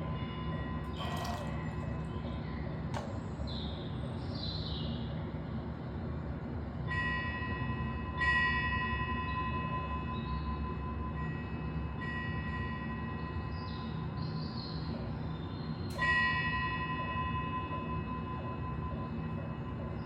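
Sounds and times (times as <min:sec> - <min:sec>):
metal bell ringing: 0:00.9 - 0:02.3.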